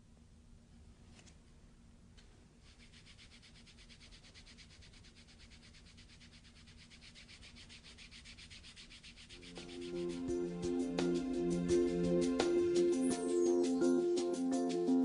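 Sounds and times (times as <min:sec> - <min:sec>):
hand rubbing tape on skin: 0:02.6 - 0:11.0
music: 0:09.4 - 0:15.0.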